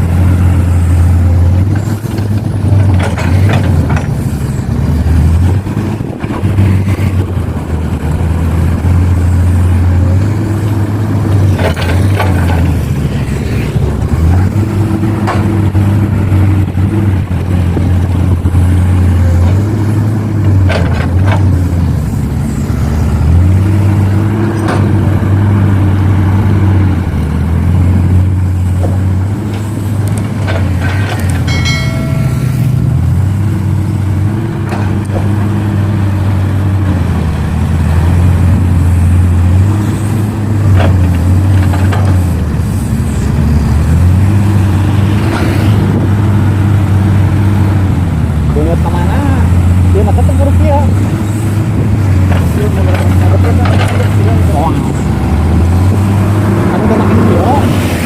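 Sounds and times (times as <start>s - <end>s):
excavator diesel engine running: 0.0s - 58.0s
brief high tone: 31.5s - 32.8s.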